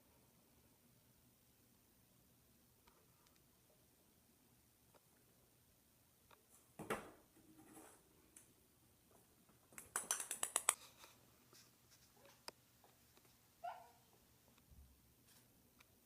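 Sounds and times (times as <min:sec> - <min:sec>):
cat clicking: 0:09.8 - 0:10.8.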